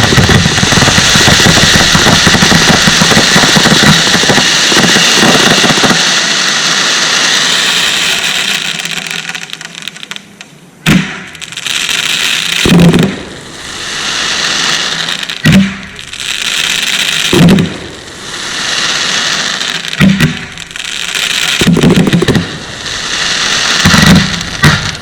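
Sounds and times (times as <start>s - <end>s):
deep firework boom: 0.0s - 6.0s, 15.4s - 16.2s, 17.3s - 18.4s, 21.6s - 25.0s
firework bangs: 0.0s - 10.2s, 10.8s - 25.0s
fireworks crackling: 0.0s - 25.0s.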